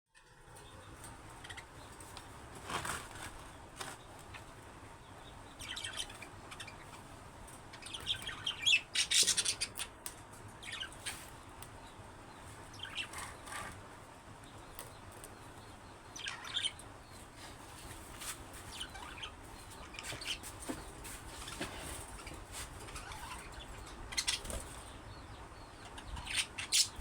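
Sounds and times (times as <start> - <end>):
budgerigars chirping and squawking: 4.3 - 10.0, 10.6 - 13.8, 14.5 - 17.2, 18.6 - 27.0.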